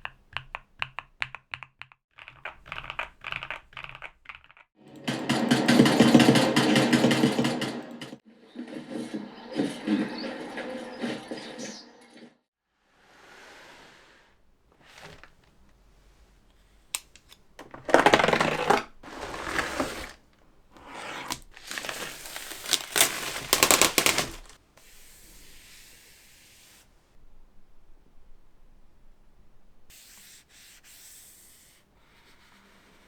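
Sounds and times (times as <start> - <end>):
soft hissing rub: 13.0 - 16.9, 20.8 - 27.2, 29.9 - 33.0
cardboard packaging rustling: 14.7 - 15.8, 16.7 - 24.6.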